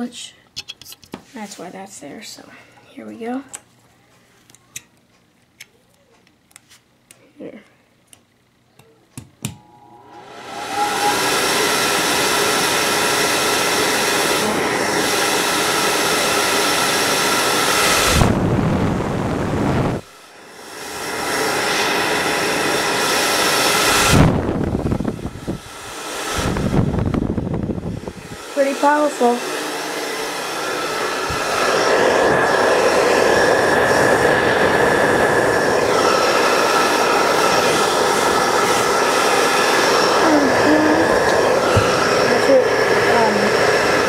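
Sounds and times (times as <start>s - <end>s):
blower whining over rushing air: 9.4s - 44.0s
low rumbling gusts: 18.0s - 20.0s, 23.9s - 28.4s.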